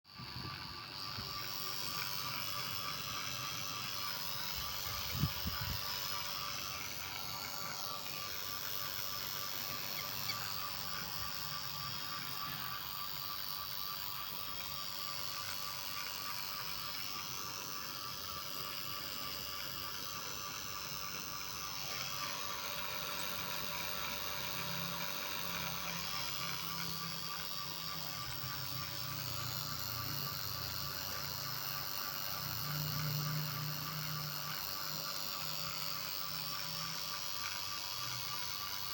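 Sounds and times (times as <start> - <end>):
vacuum pump whining: 0.0 - 38.9.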